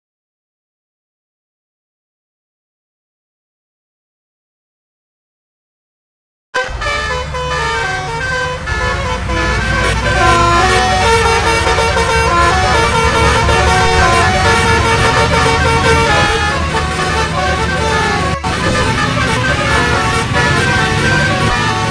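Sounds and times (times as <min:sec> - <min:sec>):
bus engine rumbling: 0:06.6 - 0:21.9
bus musical horn tune: 0:06.6 - 0:21.9.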